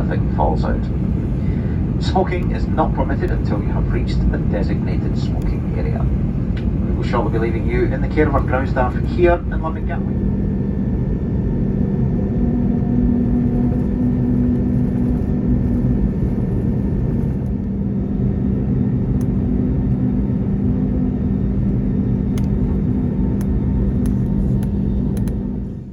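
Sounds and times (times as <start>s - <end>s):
aircraft cabin rumble: 0.0s - 25.9s
jet engines idling: 0.0s - 25.9s
faint clicks: 23.4s - 25.4s.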